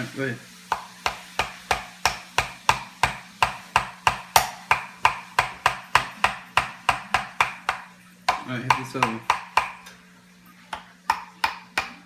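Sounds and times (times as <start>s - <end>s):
hammer tapping nail into wood: 0.7s - 9.8s.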